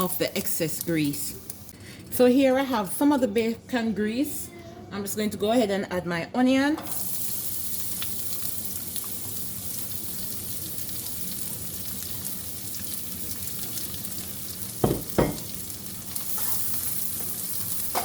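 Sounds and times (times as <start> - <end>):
onion sizzling in grease: 6.8 - 18.0
sharp knocks: 14.8 - 15.5.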